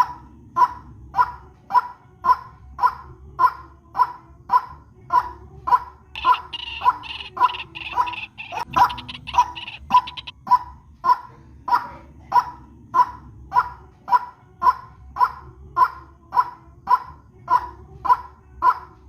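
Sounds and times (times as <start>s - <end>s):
higher faster chattering bird call: 6.2s - 10.3s
waterhen calling: 6.2s - 10.3s.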